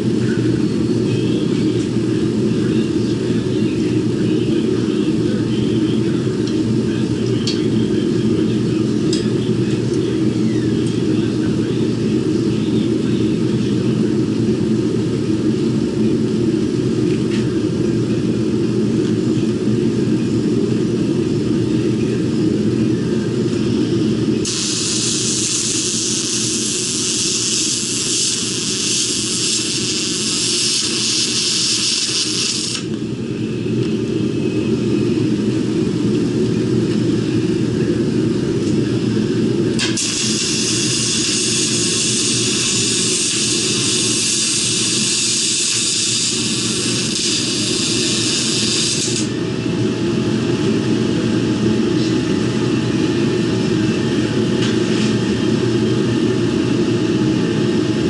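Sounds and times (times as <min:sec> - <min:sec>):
welding arc hissing: 0:24.4 - 0:32.9, 0:39.8 - 0:49.3.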